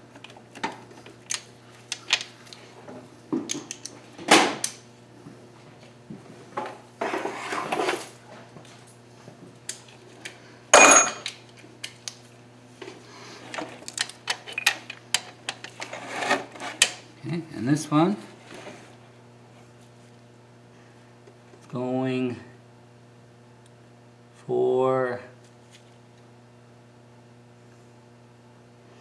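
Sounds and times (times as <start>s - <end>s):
steady low hum: 0.0s - 29.0s
loud ringing metal clank: 10.8s - 11.3s
metal tools clinking: 10.8s - 11.3s.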